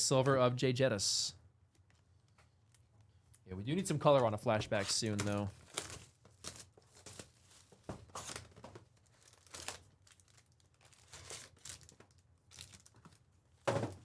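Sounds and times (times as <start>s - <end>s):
wrappers crinkling and rustling: 4.1s - 13.6s.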